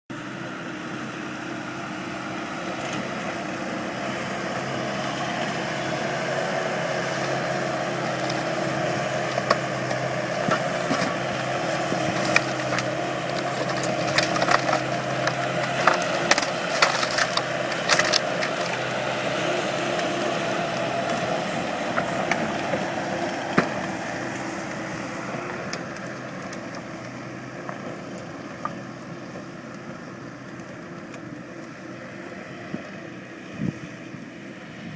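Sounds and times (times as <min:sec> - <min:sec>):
diesel engine running: 0:00.1 - 0:34.9
lumber knocking and clattering: 0:07.4 - 0:18.9.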